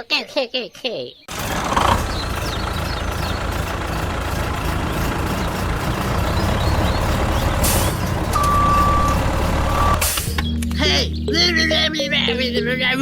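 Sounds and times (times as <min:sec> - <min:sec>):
heavy vehicle engine rumbling: 0:01.3 - 0:10.4
high reversing beep: 0:08.3 - 0:10.1.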